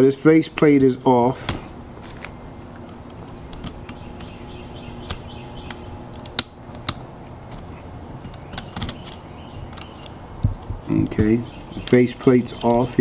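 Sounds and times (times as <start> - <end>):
faint steady hum: 0.0 - 13.0
plastic parts clicking and tapping: 5.1 - 13.0.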